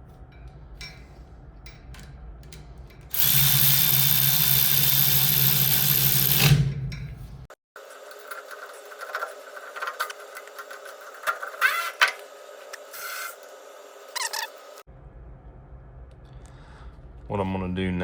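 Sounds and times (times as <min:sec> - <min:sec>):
tools rubbing and clicking: 0:00.3 - 0:13.5
cordless drill whining: 0:03.1 - 0:06.6.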